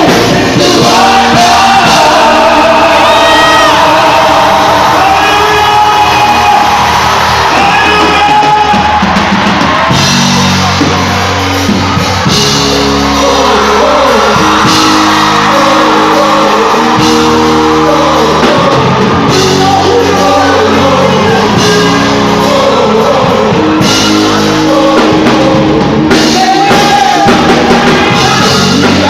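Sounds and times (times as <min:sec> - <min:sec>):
gospel band playing loudly: 0:00.0 - 0:29.0
voices singing and shouting: 0:00.0 - 0:29.0.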